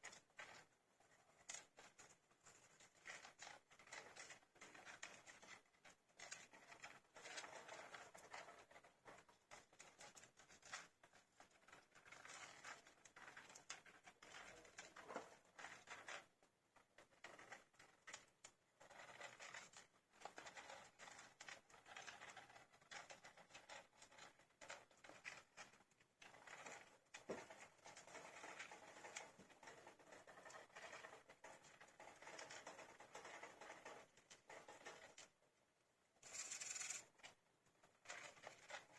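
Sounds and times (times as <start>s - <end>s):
small scratching and rustling: 0.0s - 38.9s
faint hamster pups squeaking: 36.2s - 37.2s.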